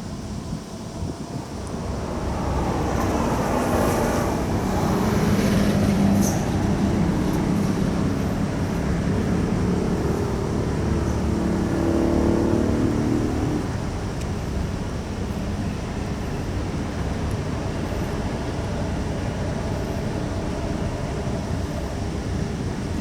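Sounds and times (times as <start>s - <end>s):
engine running: 0.1s - 23.0s.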